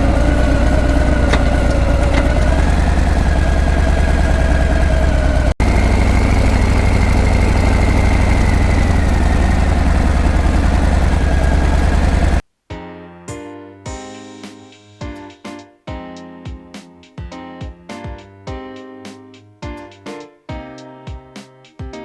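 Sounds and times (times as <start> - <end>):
motorcycle engine idling: 0.0 - 12.4.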